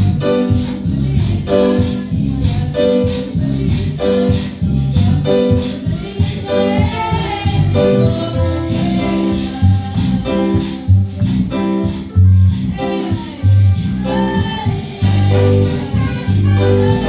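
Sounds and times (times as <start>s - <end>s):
praise song with strong bass: 0.0s - 17.0s.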